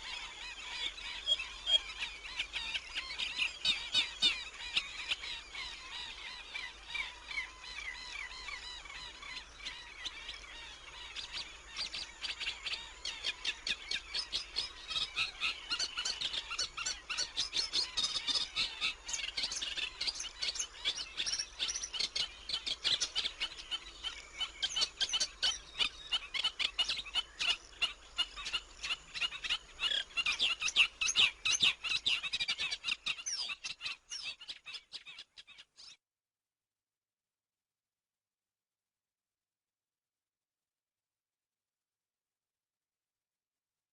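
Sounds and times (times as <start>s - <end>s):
small birds chirping: 0.0s - 36.0s.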